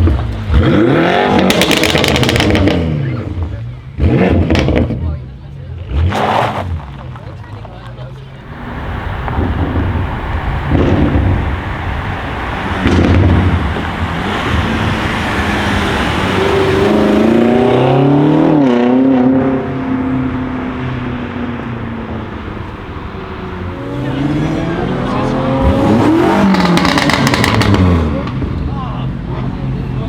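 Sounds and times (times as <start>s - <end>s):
car engine accelerating: 0.0s - 30.0s
exhaust bursts: 8.4s - 18.7s.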